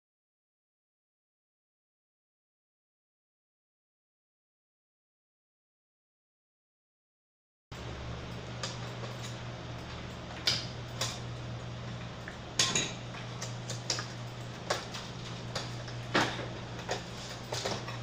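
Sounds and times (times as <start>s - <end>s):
steady low hum: 7.7s - 18.0s.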